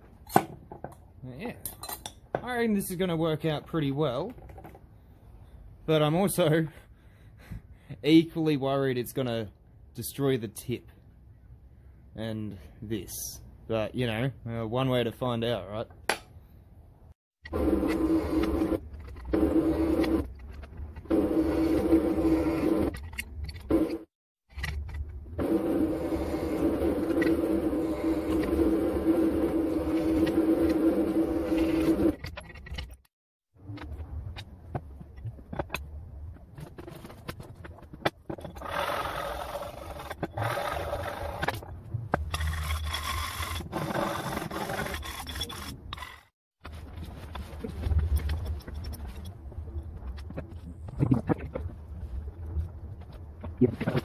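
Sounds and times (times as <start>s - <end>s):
hand tool scraping a workpiece: 42.2s - 46.3s.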